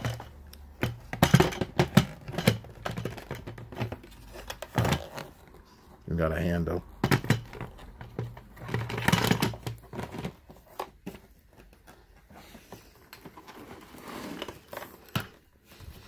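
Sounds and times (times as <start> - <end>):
plastic parts clicking and knocking: 0.0 - 5.6, 6.7 - 16.0
rustling: 7.6 - 16.0.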